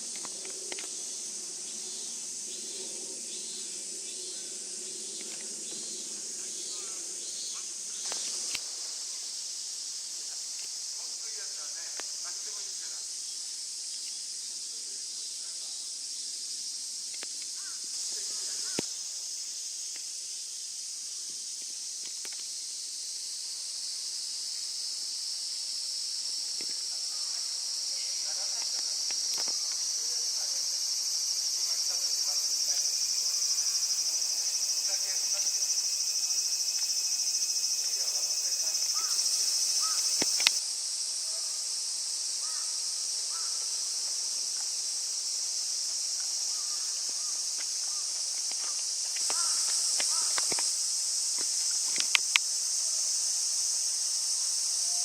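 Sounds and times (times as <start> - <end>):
insect chorus shrilling: 0.0 - 55.0
faint ticks: 39.9 - 40.6, 48.3 - 52.5
sharp click: 40.1 - 40.6.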